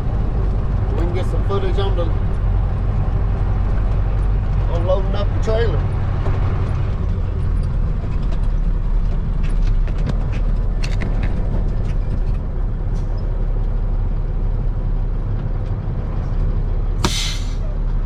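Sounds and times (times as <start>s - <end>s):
diesel truck engine idling: 16.5s - 18.0s.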